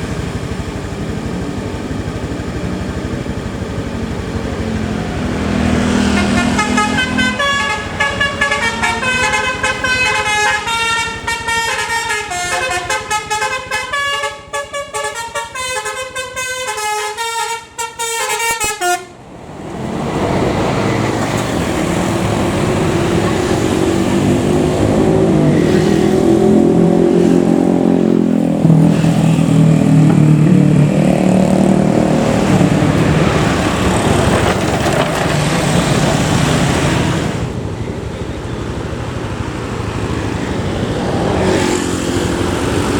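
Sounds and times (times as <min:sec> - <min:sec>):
bus engine and road noise: 0:00.0 - 0:42.9
musical bus horn melody: 0:06.0 - 0:19.2.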